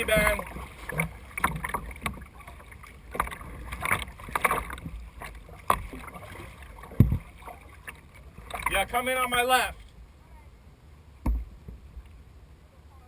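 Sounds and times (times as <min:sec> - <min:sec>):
paddle splashing in water: 0:00.0 - 0:09.9.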